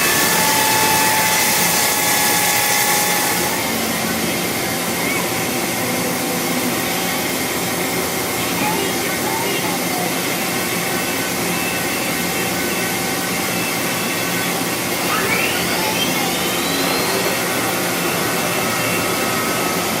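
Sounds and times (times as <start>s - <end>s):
machine hissing: 0.0s - 9.2s, 10.1s - 20.0s
high whine sweeping upward: 14.1s - 19.8s.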